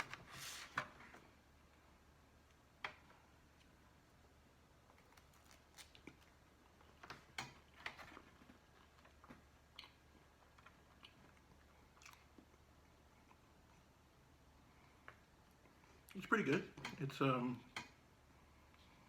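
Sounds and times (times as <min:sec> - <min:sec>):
person chewing bread: 0:04.8 - 0:13.9.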